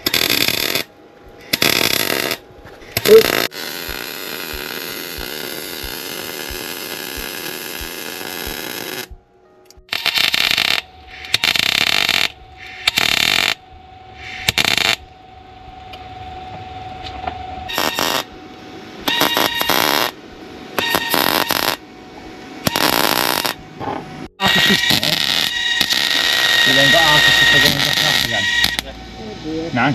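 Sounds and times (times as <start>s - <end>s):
welder crackling: 0.0s - 13.6s, 14.2s - 15.1s, 17.7s - 18.4s, 19.0s - 20.2s, 20.8s - 21.8s, 22.6s - 23.6s, 24.4s - 28.9s.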